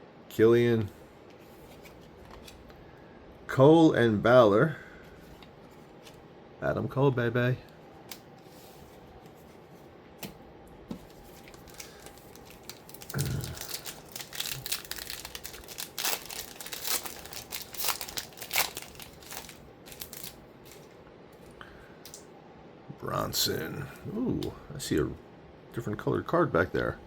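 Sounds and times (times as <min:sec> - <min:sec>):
wrapper tearing and crinkling: 0:11.0 - 0:20.9.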